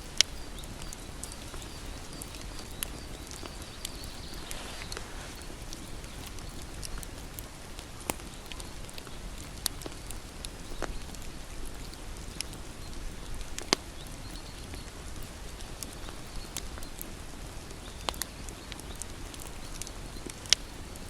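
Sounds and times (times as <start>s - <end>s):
bonfire crackling: 0.0s - 21.0s.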